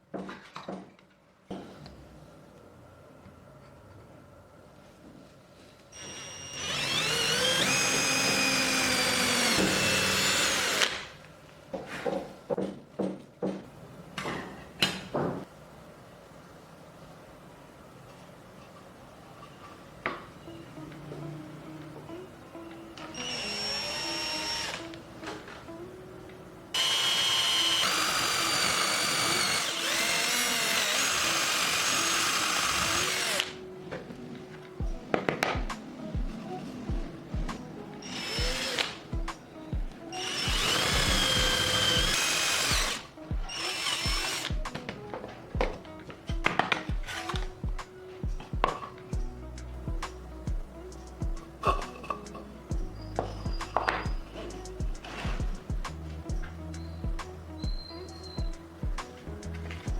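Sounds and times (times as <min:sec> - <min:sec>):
power tool motor whine: 0:05.9 - 0:11.1, 0:23.0 - 0:25.0, 0:26.8 - 0:33.6, 0:38.0 - 0:39.0, 0:40.1 - 0:44.7.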